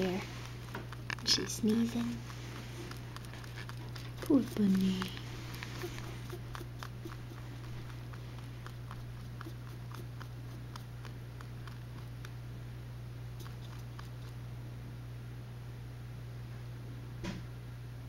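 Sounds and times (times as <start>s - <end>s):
rabbit clicks and rustles: 0.0s - 12.4s, 13.4s - 14.4s
steady low hum: 0.0s - 18.0s.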